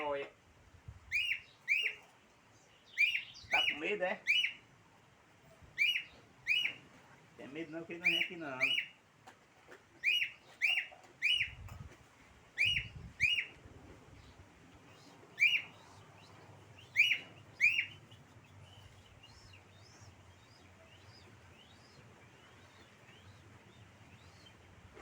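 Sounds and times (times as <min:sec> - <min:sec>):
bird chirping sharply: 0:01.1 - 0:02.0, 0:02.9 - 0:04.6, 0:05.8 - 0:06.8, 0:10.0 - 0:11.6, 0:12.6 - 0:13.5, 0:15.4 - 0:24.6.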